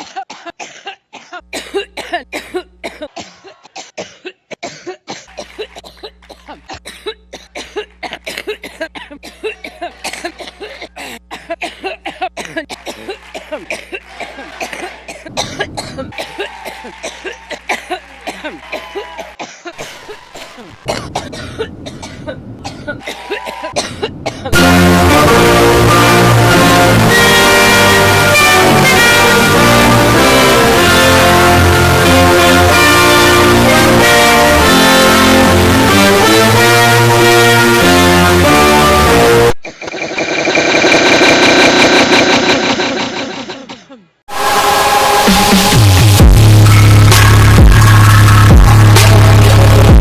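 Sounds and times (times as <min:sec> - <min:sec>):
woman coughing rapidly: 0:00.0 - 0:14.0, 0:14.6 - 0:20.0, 0:20.6 - 0:24.6, 0:43.1 - 0:44.2.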